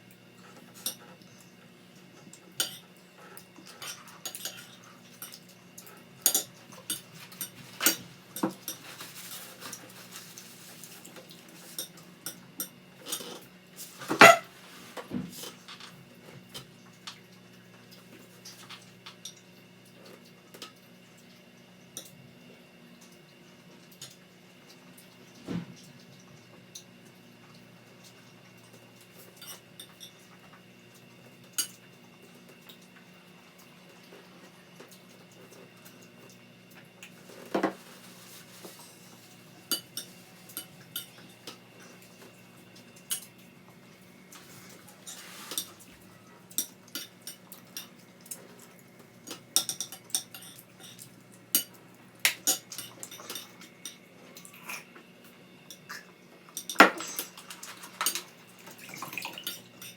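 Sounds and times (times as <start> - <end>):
cutlery clinking on plates: 14.1 - 14.4, 49.3 - 54.0.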